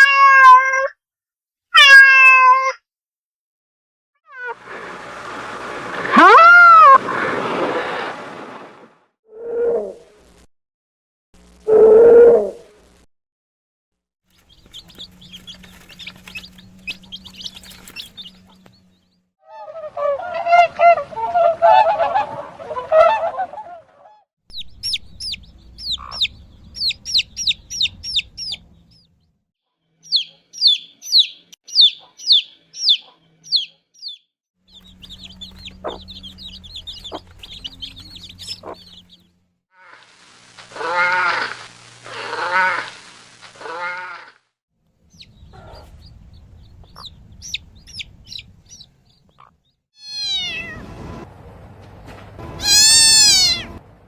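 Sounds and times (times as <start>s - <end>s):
chicks peeping: 14.3s - 19.1s, 24.5s - 29.1s, 30.0s - 39.3s, 45.1s - 49.6s
adult fowl calling: 25.8s - 28.6s, 34.8s - 39.2s, 40.7s - 43.0s, 52.6s - 53.8s.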